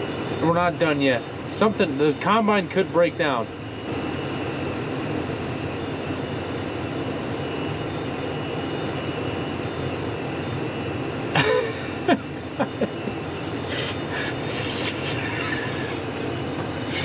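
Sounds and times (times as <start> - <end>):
combine harvester drone: 0.0 - 17.0
brief voice sounds: 12.7 - 17.0.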